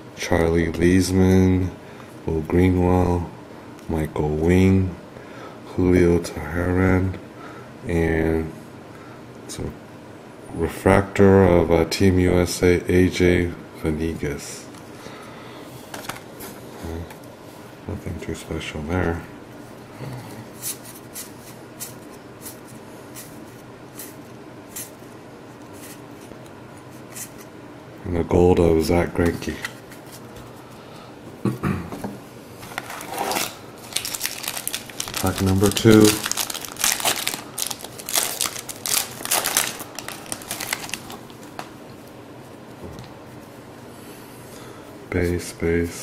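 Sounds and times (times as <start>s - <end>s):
low room hum: 0.0s - 46.0s
card pack wrapper tearing and crinkling: 32.7s - 41.4s.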